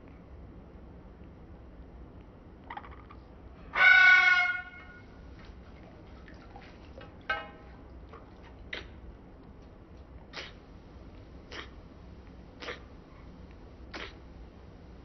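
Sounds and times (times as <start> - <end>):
bird sneezing: 8.7 - 9.0, 10.3 - 10.6, 11.5 - 11.8, 12.6 - 12.9, 13.9 - 14.3.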